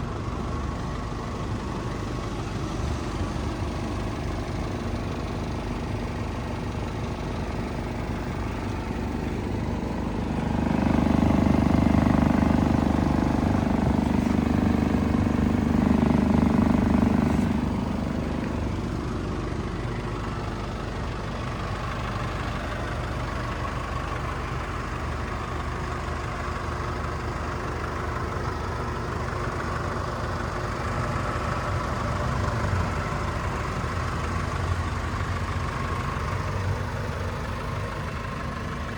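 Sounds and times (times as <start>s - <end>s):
pickup truck engine running: 0.0s - 38.9s.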